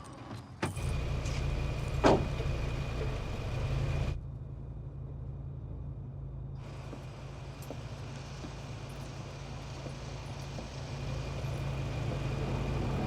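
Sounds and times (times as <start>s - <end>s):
car engine idling: 0.8s - 13.0s
car door slamming: 2.0s - 2.4s.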